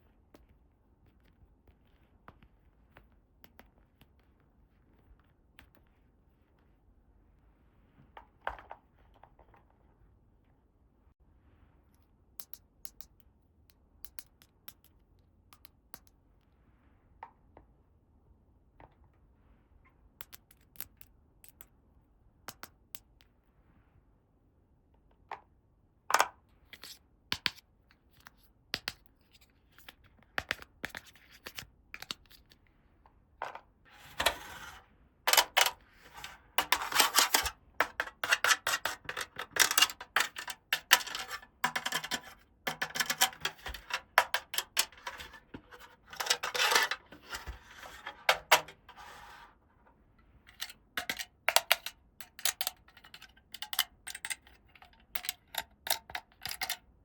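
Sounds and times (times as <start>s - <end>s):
rustling and scraping: 33.4s - 50.8s
plastic toy pieces clicking: 35.3s - 48.7s, 50.6s - 56.8s.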